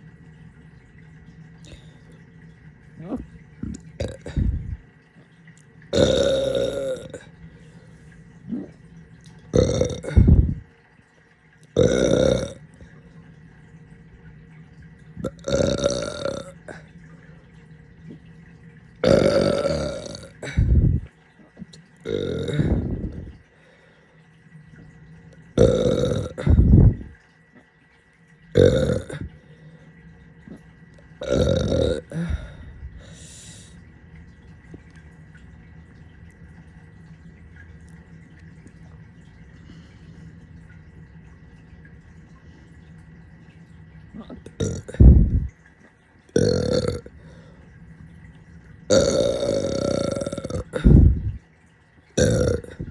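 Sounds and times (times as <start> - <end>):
person burping: 3.0 - 4.8, 5.9 - 7.3, 9.5 - 10.6, 11.8 - 12.7, 15.2 - 16.9, 19.0 - 21.0, 22.0 - 23.3, 25.6 - 27.1, 28.5 - 29.3, 31.2 - 32.7, 44.2 - 45.5, 46.4 - 47.2, 48.9 - 51.4, 52.2 - 52.9.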